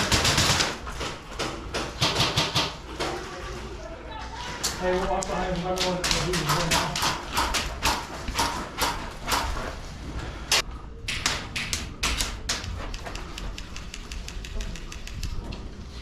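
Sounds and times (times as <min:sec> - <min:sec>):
footsteps walking: 0:02.8 - 0:10.0.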